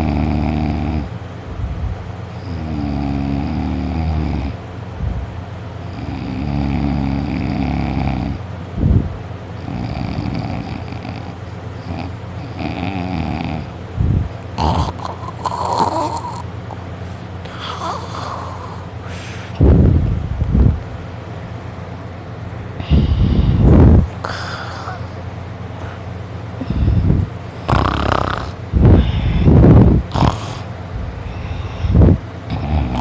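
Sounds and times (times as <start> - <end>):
person snoring loudly: 0.0 - 1.1, 2.4 - 4.6, 5.9 - 8.4, 9.6 - 13.7, 14.6 - 16.8, 17.5 - 18.9, 22.8 - 25.2, 26.6 - 33.0
short noisy breaths: 14.9 - 19.6, 22.8 - 27.8, 28.8 - 32.2.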